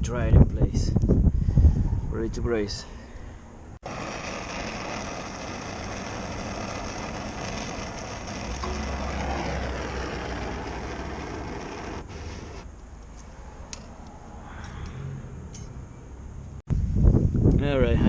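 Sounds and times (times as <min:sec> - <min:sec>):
torch flame hissing: 0:03.8 - 0:12.7.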